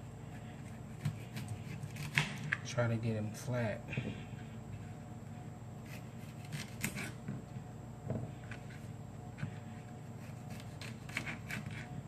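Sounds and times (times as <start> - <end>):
steady low hum: 0.0 - 12.0
knife cutting on cutting board: 0.6 - 2.4, 5.8 - 7.3, 10.2 - 12.0.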